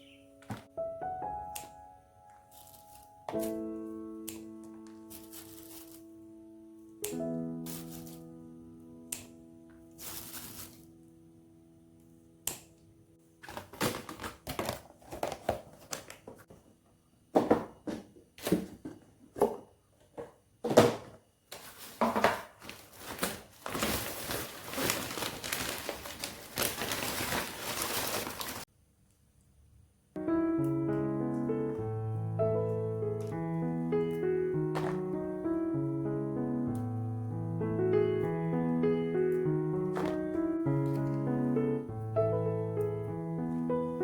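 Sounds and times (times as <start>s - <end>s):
crinkling and crunching: 2.5s - 3.6s, 4.8s - 6.1s, 7.7s - 8.2s, 9.9s - 10.9s, 13.4s - 16.5s, 21.5s - 28.7s.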